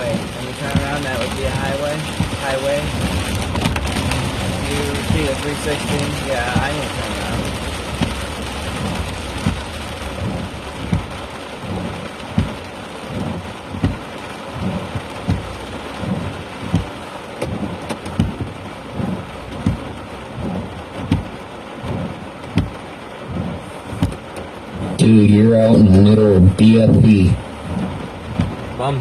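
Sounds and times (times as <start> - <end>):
rain on a car: 0.0 - 29.0
short low thumps: 7.4 - 14.0, 14.6 - 25.1, 25.8 - 28.8.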